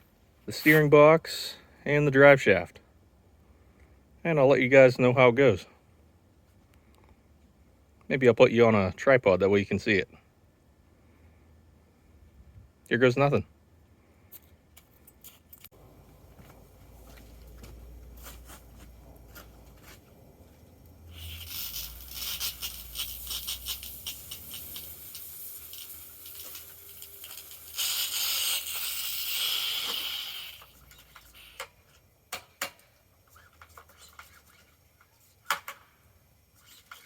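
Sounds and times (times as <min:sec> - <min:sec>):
pressure washer spraying hiss: 0:21.0 - 0:31.7.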